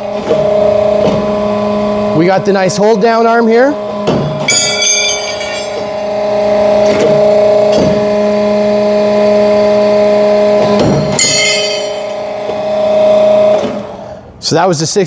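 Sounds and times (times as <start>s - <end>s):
hydraulic pump motor humming: 0.0s - 14.4s
sharp metallic clank: 4.4s - 6.1s, 10.8s - 12.3s.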